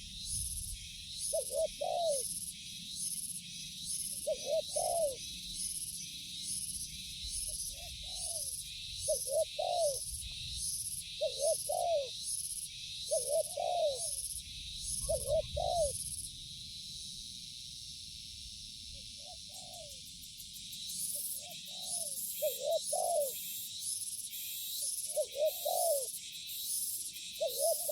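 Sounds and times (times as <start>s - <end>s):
doves cooing: 1.3s - 2.3s, 4.2s - 5.2s, 9.1s - 10.0s, 11.2s - 12.1s, 13.1s - 14.2s, 15.0s - 16.0s, 21.7s - 23.4s, 25.2s - 26.1s, 27.4s - 27.9s.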